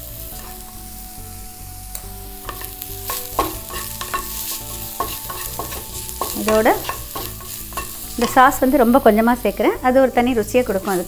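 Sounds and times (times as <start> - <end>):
vegetables sizzling in oil: 0.0 - 11.0
spatula scraping pan: 0.3 - 0.9, 2.4 - 9.0.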